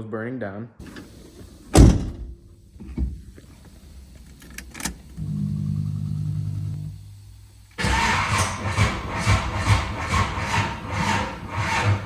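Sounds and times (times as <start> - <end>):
low electrical hum: 0.8 - 7.8.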